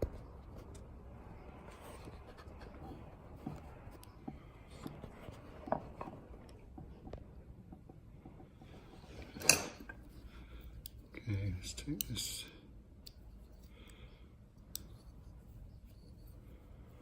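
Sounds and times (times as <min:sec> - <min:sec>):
lock parts clicking and scraping: 0:08.4 - 0:11.1.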